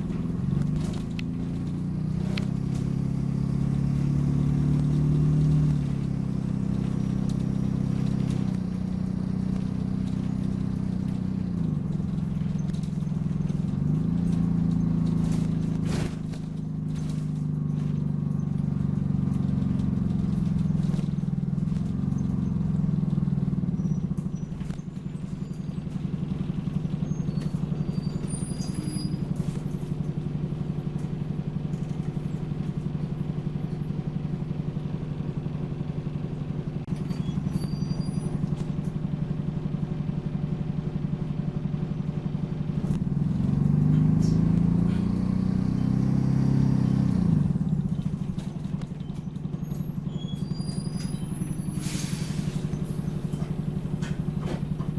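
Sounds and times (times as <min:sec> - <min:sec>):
bus diesel engine revving: 0:00.0 - 0:54.9
high squeaks: 0:23.7 - 0:25.9, 0:27.0 - 0:29.5, 0:36.9 - 0:38.5, 0:49.0 - 0:54.3.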